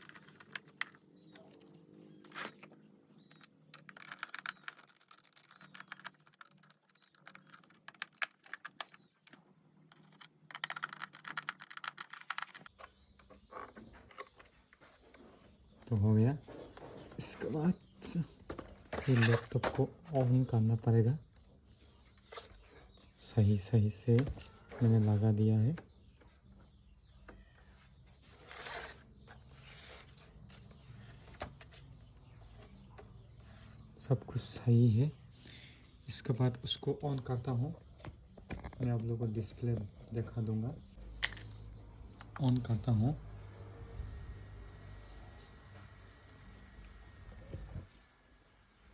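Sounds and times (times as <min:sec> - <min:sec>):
rubbing and handling noises: 0:00.0 - 0:20.5, 0:26.1 - 0:34.2.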